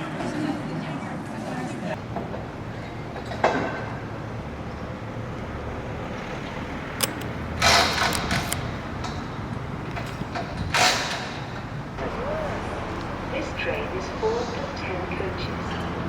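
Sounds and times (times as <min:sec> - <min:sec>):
low train rumble: 0:00.0 - 0:16.0
sharp click: 0:07.0 - 0:09.2.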